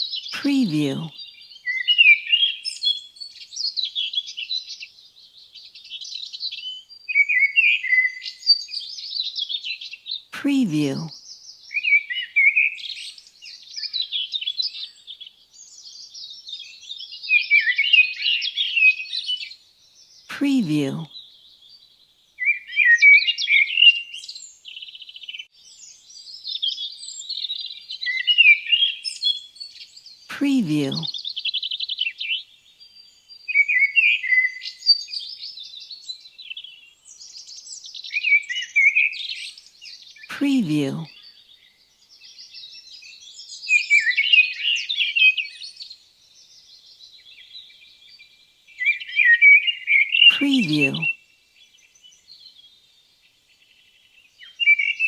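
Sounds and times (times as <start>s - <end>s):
songbirds chirping and singing: 0.0s - 55.0s.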